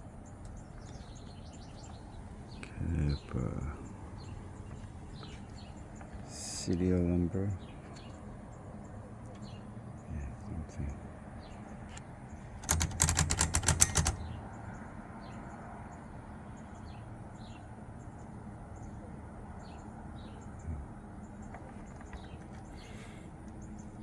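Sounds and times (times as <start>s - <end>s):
typewriter clacking: 12.6s - 14.6s
faint bird chirps: 14.0s - 24.0s.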